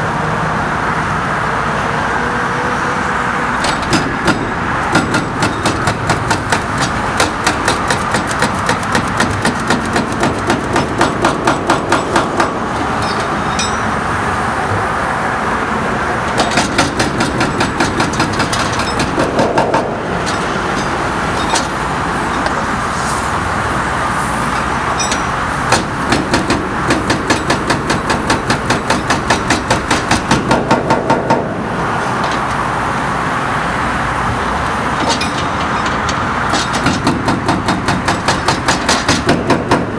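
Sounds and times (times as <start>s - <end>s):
excavator engine: 0.0s - 39.9s
traffic noise: 0.0s - 39.9s
hydraulic breaker pounding concrete: 3.6s - 13.8s, 16.3s - 22.7s, 25.0s - 32.7s, 34.7s - 39.9s.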